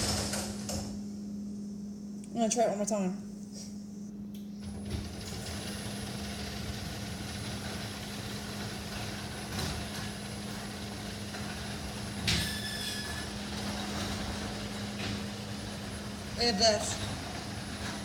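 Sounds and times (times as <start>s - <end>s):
door rumbling along track: 0.0s - 1.0s, 4.6s - 18.0s
garage door opener motor: 0.0s - 1.1s, 4.4s - 18.0s.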